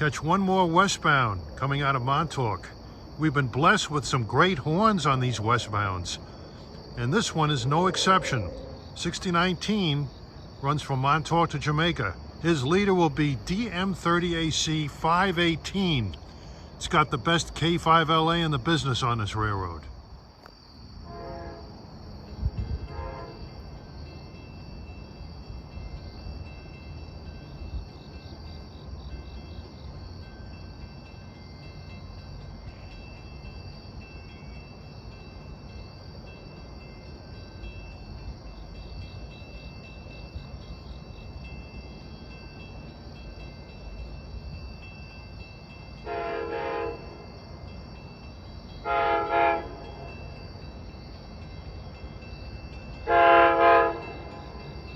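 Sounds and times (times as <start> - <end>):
locomotive air horn blasts: 21.0 - 21.8, 22.8 - 23.5, 46.0 - 47.2, 48.8 - 50.0, 53.0 - 54.2.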